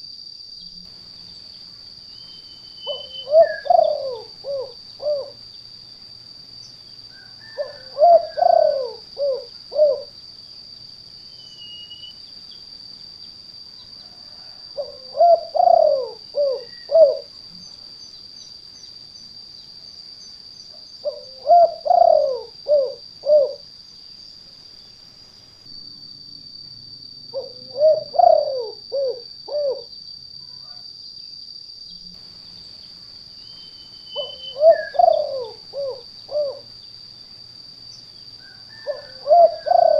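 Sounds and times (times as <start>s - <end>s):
dove cooing: 2.8s - 5.4s, 7.2s - 10.1s, 14.2s - 17.3s, 21.0s - 23.7s, 27.3s - 29.9s, 34.1s - 36.7s, 38.5s - 39.9s.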